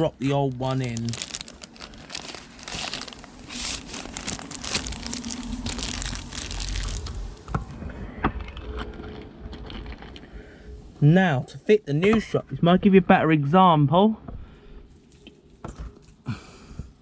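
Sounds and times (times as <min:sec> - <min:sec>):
packaging crinkling and rustling: 0:00.0 - 0:07.5, 0:08.4 - 0:10.3.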